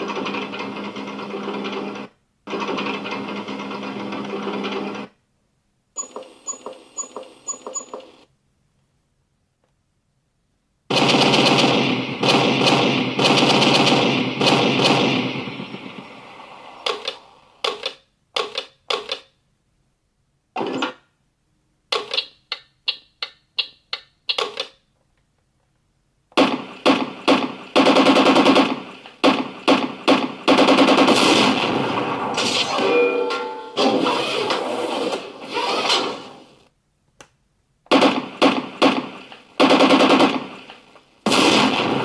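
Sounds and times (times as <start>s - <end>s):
machine-gun fire: 10.9s - 16.2s, 26.4s - 32.8s, 37.9s - 42.0s
sharp gunshots: 10.9s - 16.3s, 26.4s - 32.8s, 37.9s - 42.0s.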